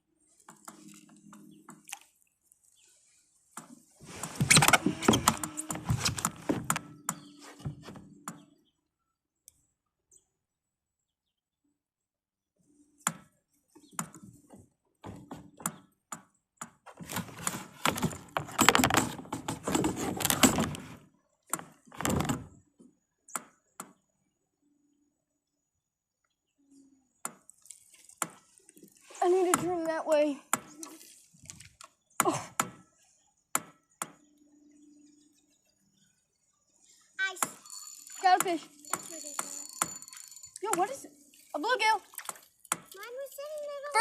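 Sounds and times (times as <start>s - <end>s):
gear rattling and knocking: 17.2s - 21.0s.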